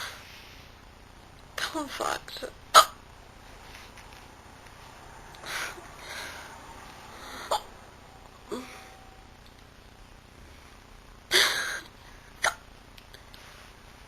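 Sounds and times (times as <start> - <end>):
woman hiccuping: 2.7 - 3.0, 11.3 - 12.6.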